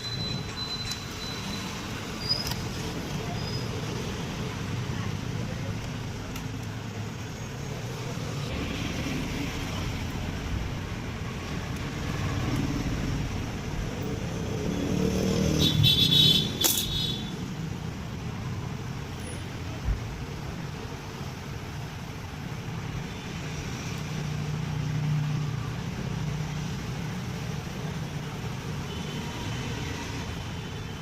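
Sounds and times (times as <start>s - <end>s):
road traffic: 0.0s - 31.0s
vehicle passing close: 12.0s - 15.8s.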